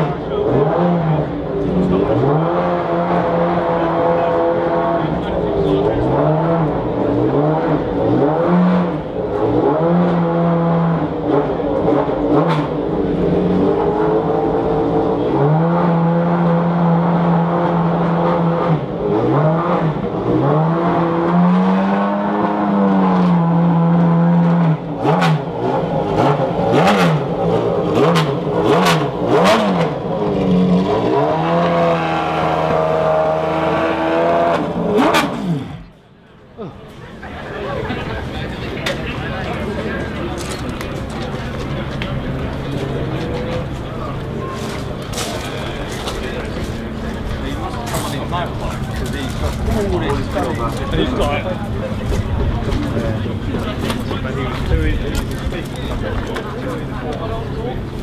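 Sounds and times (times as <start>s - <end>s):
race car engine revving: 0.0s - 58.0s
exhaust cracks: 38.2s - 58.0s.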